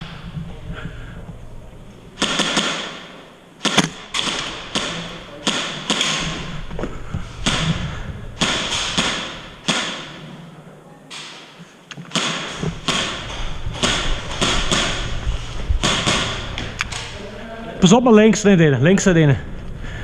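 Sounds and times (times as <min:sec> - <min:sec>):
airsoft gun shots echoing: 0:02.2 - 0:06.6, 0:07.4 - 0:10.3, 0:11.1 - 0:15.2, 0:15.8 - 0:17.2.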